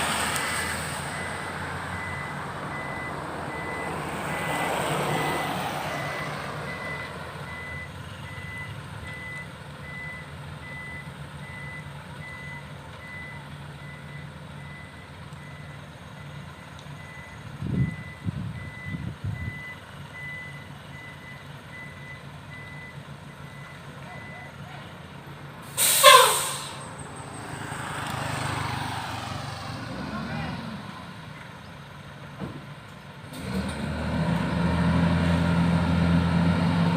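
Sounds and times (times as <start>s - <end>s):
diesel engine running: 0.0s - 36.9s
truck back-up alarm beeping: 0.3s - 24.9s.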